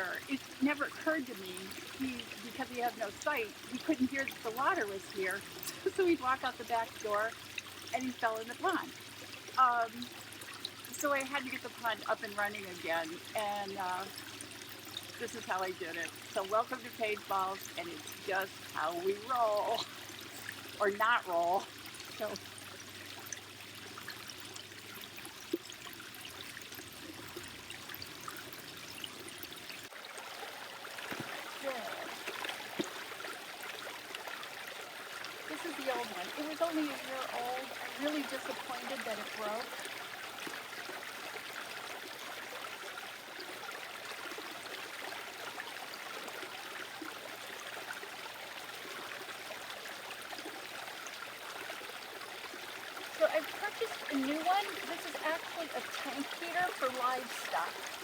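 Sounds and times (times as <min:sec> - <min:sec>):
water plop: 0:00.0 - 0:22.5, 0:30.4 - 0:34.6, 0:35.3 - 0:40.8, 0:53.1 - 0:58.0
water drips: 0:00.0 - 0:58.0
water trickling over small waterfall: 0:00.0 - 0:58.0.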